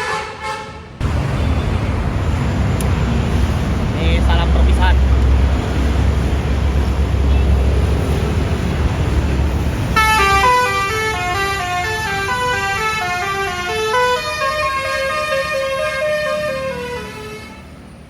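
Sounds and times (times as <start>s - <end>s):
musical bus horn tune: 0.0s - 1.0s, 9.9s - 17.8s.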